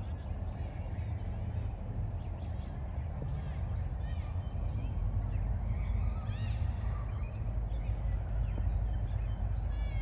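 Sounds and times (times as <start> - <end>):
low rumble: 0.0 - 10.0
arching bird calls: 2.1 - 10.0.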